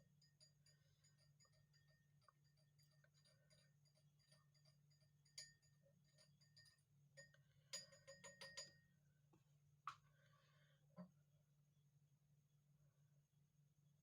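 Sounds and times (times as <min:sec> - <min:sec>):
faint light clinks: 0:00.0 - 0:09.0.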